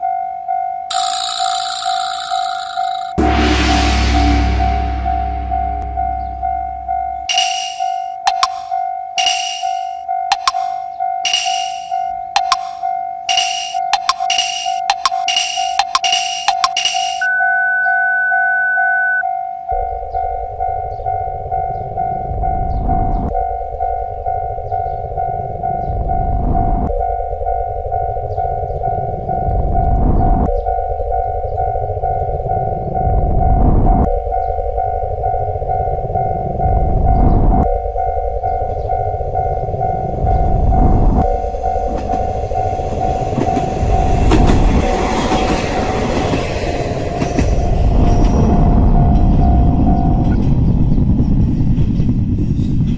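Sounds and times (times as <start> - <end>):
railroad crossing alarm ringing: 0.0 - 50.3
train rumble: 3.1 - 17.3, 19.8 - 52.9
train wheels clacking on rails: 7.3 - 17.3, 41.7 - 49.5.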